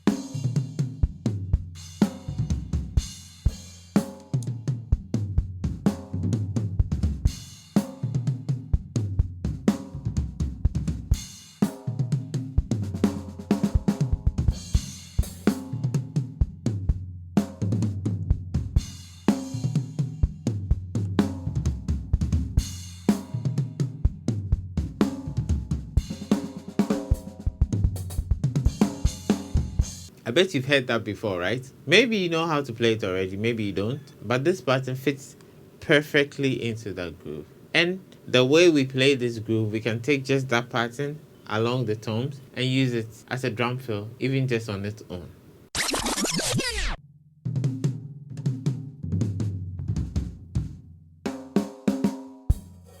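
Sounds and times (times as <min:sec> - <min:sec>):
drum kit playing gospel groove: 0:00.0 - 0:16.9, 0:17.7 - 0:35.2, 0:52.0 - 0:53.0.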